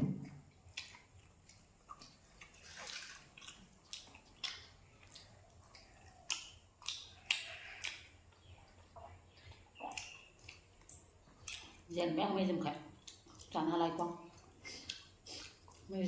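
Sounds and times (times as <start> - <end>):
person chewing crispy food: 0.2 - 11.9, 12.9 - 16.0.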